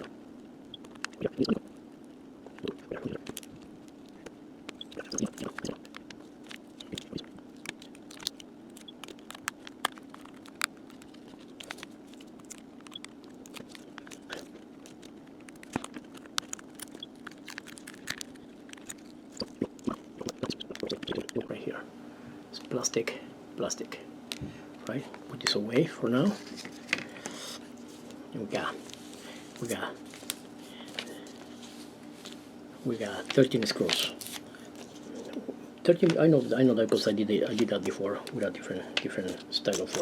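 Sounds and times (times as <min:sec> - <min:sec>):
steady low hum: 0:00.0 - 0:40.0.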